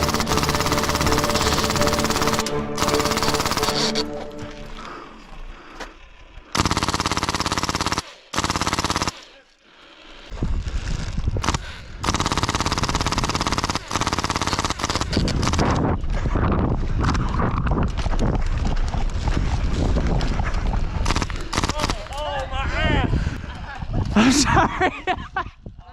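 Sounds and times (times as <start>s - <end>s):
airsoft guns firing bursts: 0.0s - 4.4s, 6.5s - 9.3s, 11.4s - 15.8s, 21.0s - 22.2s.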